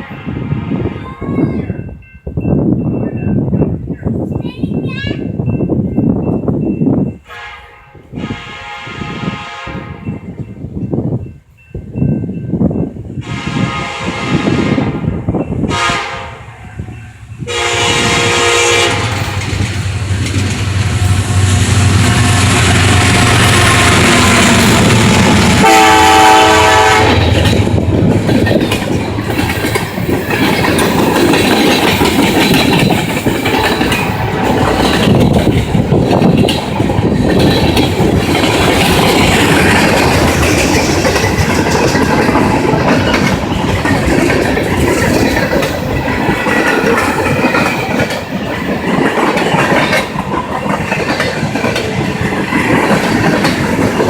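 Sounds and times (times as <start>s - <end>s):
train horn blast: 0.0s - 1.2s, 7.2s - 10.3s, 13.2s - 19.6s, 20.2s - 28.0s
diesel locomotive engine running: 12.9s - 54.0s
train wheels clattering over rail joints: 17.6s - 54.0s.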